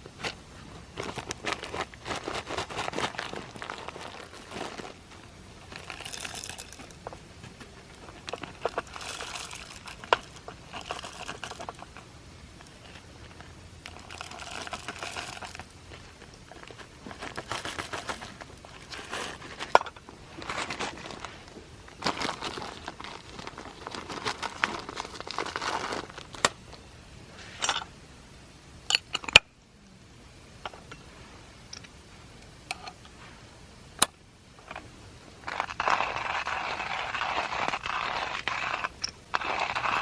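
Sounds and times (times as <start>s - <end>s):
crinkling and rustling: 0.0s - 28.0s, 32.7s - 40.0s.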